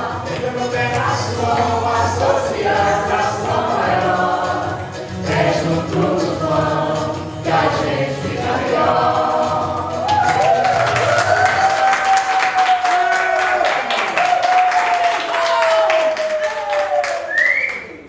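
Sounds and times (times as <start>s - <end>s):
choir singing: 0.0s - 11.4s.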